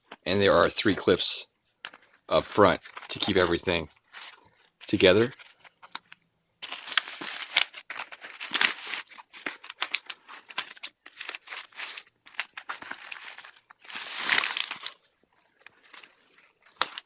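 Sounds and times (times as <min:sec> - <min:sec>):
fabric rustling and scraping: 0:06.6 - 0:16.7.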